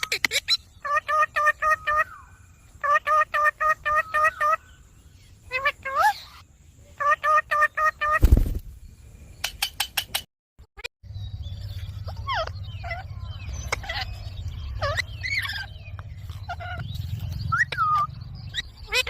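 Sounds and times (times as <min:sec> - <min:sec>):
parakeet chirps and squawks: 0:00.0 - 0:08.2, 0:12.0 - 0:19.0.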